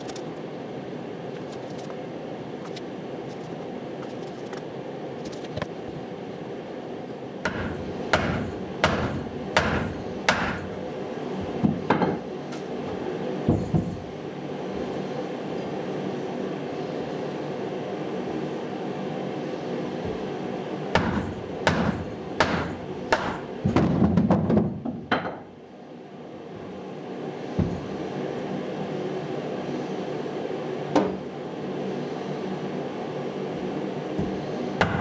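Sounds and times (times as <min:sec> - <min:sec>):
steady hum: 0:00.0 - 0:23.8
hammer striking wood: 0:07.5 - 0:10.8, 0:21.0 - 0:23.8.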